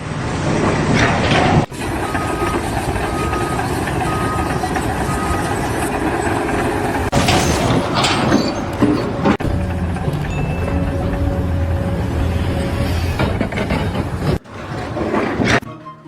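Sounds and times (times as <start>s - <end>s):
heavy vehicle engine running: 0.0s - 15.6s
reversing alarm beeping: 1.7s - 13.3s.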